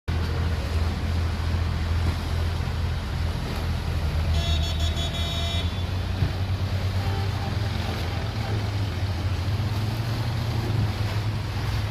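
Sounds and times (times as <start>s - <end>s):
boat engine droning: 0.1s - 11.9s
water noise: 0.1s - 11.9s
pitched toot: 4.3s - 5.9s.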